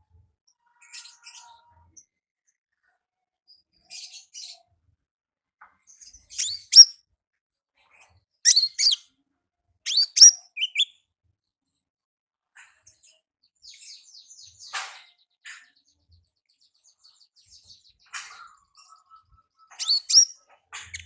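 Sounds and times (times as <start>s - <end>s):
bird high sharp chirps: 6.3s - 7.0s, 8.5s - 9.0s, 9.9s - 10.9s, 17.0s - 21.0s.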